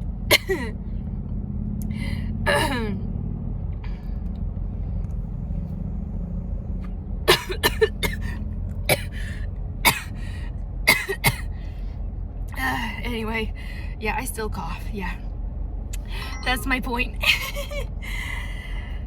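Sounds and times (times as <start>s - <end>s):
steady low hum: 0.0s - 19.0s
woman coughing: 0.3s - 0.7s, 2.5s - 3.0s, 7.3s - 9.2s, 9.9s - 10.2s, 10.9s - 11.5s.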